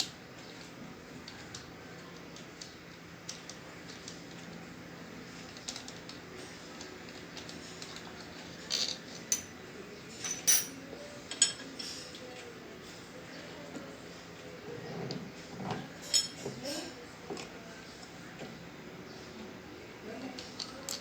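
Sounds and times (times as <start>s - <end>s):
metal tools clinking: 8.7s - 9.6s, 10.2s - 12.0s, 16.0s - 16.4s.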